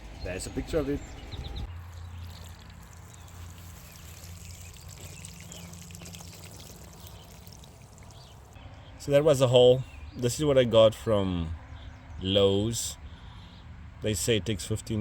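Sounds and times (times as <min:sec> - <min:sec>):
water spraying from hose: 0:01.8 - 0:08.5.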